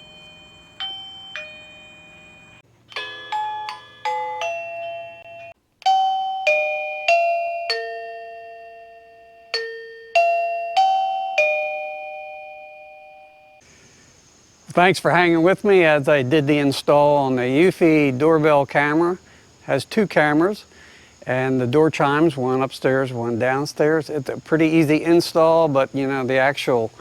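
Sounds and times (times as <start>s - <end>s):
doorbell chime: 0.0s - 13.6s.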